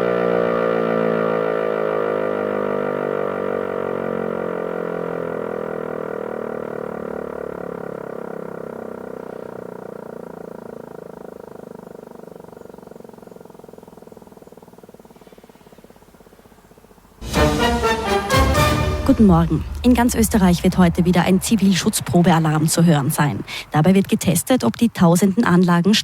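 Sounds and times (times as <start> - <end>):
electric siren winding down: 0.0 - 11.8, 17.2 - 23.0.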